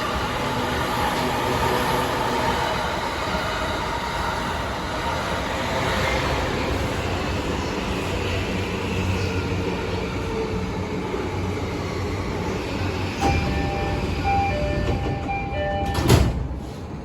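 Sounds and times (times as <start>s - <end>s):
train low hum: 0.0s - 17.0s
train door chime: 13.2s - 16.4s.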